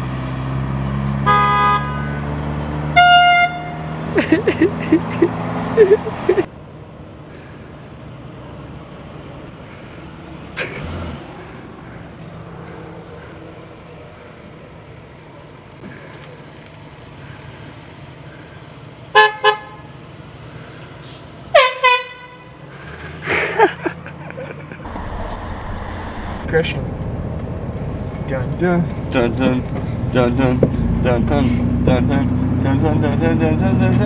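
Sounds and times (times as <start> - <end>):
air horn blasts: 1.2 - 2.2, 2.9 - 4.0, 19.2 - 19.9, 21.5 - 22.6.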